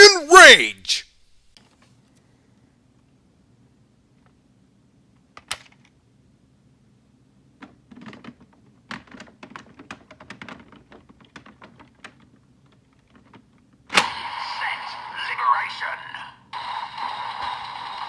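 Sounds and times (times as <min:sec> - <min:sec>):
small clicks and rattles: 0:07.6 - 0:13.7
plastic toy clicks and clacks: 0:07.9 - 0:13.4.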